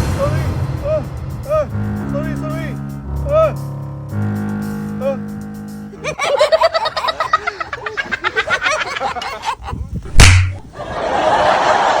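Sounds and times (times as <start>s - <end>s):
rapid choppy laughing: 6.0s - 10.0s
loud smack: 10.1s - 10.7s.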